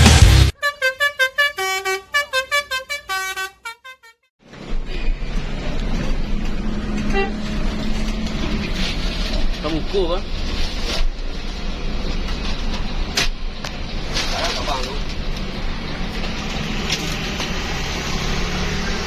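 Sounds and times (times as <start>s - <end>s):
bus running noise: 0.0s - 19.0s
musical bus horn tune: 0.2s - 4.3s, 7.0s - 7.6s
short horn note: 0.2s - 4.3s.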